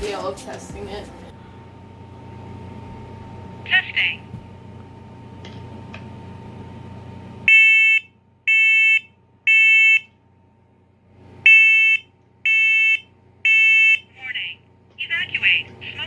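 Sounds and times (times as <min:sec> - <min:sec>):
smoke alarm beeping: 0:07.5 - 0:10.1, 0:11.4 - 0:14.1.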